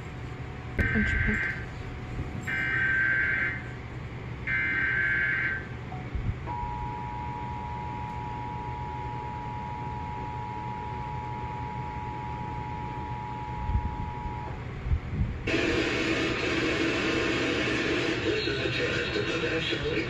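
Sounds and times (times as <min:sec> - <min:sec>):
two-tone alert signal: 0:00.8 - 0:01.6.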